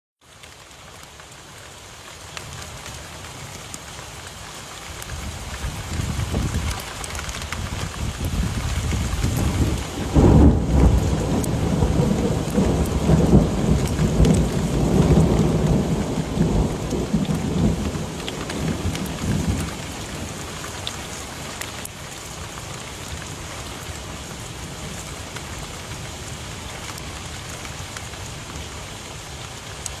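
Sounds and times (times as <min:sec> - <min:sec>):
steady rain: 0:00.2 - 0:30.0
rolling thunder: 0:08.0 - 0:20.3.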